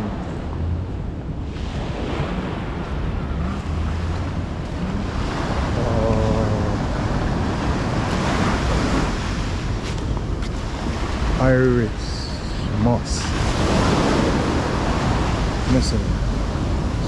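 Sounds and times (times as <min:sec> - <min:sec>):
sea waves washing on shore: 0:00.0 - 0:17.0
wind buffeting microphone: 0:00.0 - 0:17.0
faint voice: 0:05.8 - 0:06.8.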